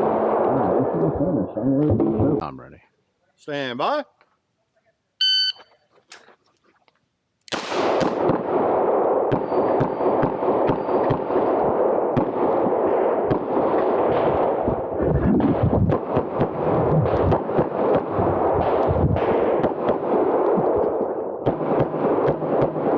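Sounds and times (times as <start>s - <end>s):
pistol shots: 7.5s - 14.9s, 15.6s - 22.9s.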